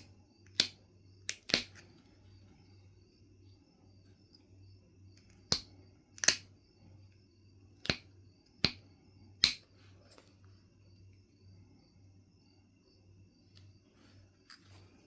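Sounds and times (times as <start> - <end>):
flint flakes snapping: 0.5 - 1.8, 5.4 - 6.4, 9.4 - 9.6.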